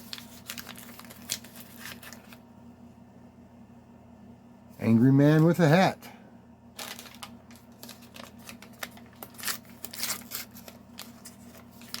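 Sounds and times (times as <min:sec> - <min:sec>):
toy packaging rustling and clicking: 0:00.0 - 0:02.4, 0:06.8 - 0:12.0.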